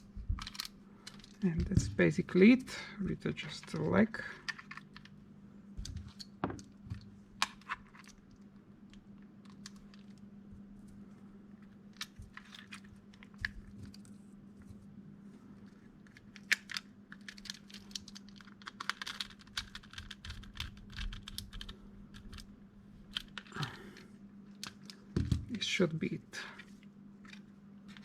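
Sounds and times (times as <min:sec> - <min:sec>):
faint steady hum: 0:00.0 - 0:28.0
plastic parts clicking: 0:00.4 - 0:01.5, 0:03.6 - 0:05.2, 0:16.1 - 0:22.5.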